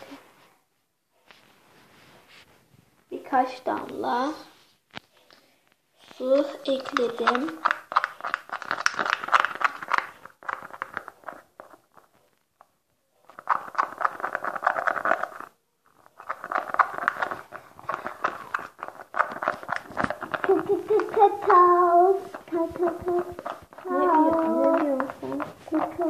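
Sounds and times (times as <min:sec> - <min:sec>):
slime squishing and crackling: 0:06.0 - 0:26.0.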